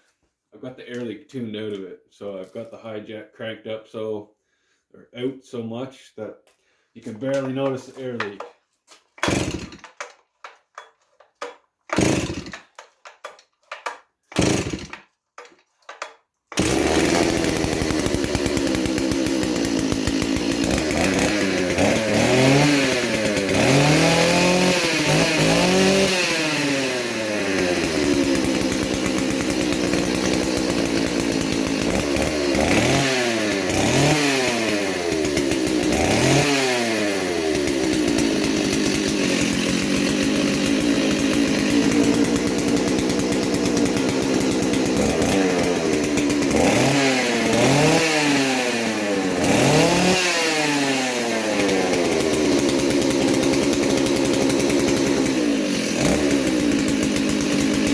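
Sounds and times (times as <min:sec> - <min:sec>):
chainsaw pull starter rasps: 0:07.1 - 0:57.9
chainsaw engine revving: 0:09.2 - 0:10.1, 0:11.9 - 0:12.8, 0:14.3 - 0:15.1, 0:16.5 - 0:57.9.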